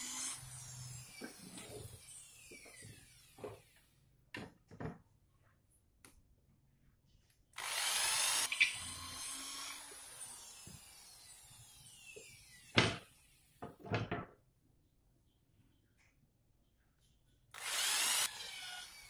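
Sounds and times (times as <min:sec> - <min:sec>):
electric power tool motor: 0:00.0 - 0:03.8, 0:07.6 - 0:12.7, 0:17.6 - 0:19.0.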